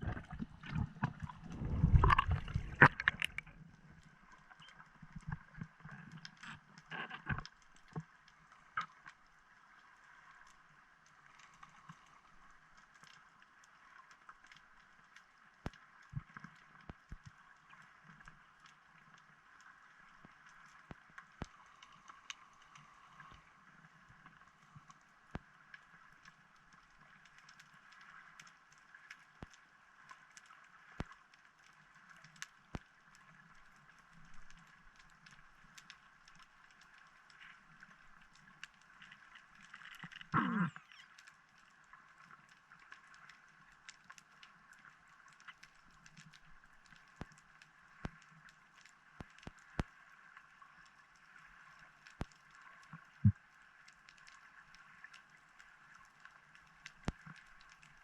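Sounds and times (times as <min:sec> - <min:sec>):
sharp underwater clicks: 0:00.0 - 0:09.2, 0:30.3 - 0:50.0, 0:51.6 - 0:58.0.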